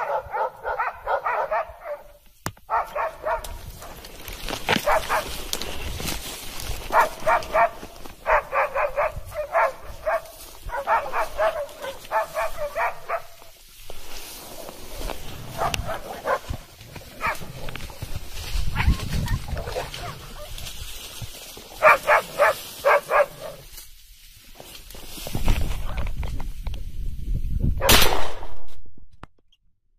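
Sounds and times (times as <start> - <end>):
dog barking: 0.0 - 2.1, 2.7 - 3.6, 4.8 - 5.3, 6.9 - 13.4, 15.5 - 16.5, 17.2 - 17.5, 18.7 - 20.5, 21.8 - 23.6.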